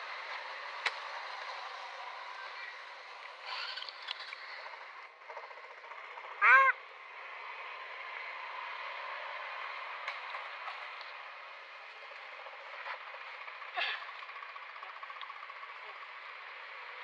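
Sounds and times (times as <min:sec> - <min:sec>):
animal call: 0:06.4 - 0:06.8.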